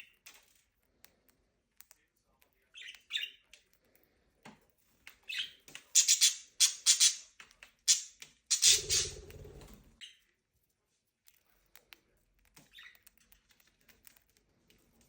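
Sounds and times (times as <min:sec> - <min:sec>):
budgerigars squawking and chirping: 0:05.3 - 0:07.3, 0:07.9 - 0:09.3
buzzy bird call: 0:08.5 - 0:09.2.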